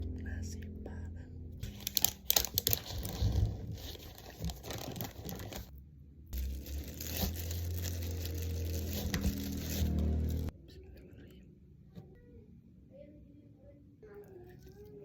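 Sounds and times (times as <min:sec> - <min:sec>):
steady low hum: 0:00.0 - 0:14.4
food wrapping crinkling and tearing: 0:01.6 - 0:05.7, 0:06.4 - 0:10.5.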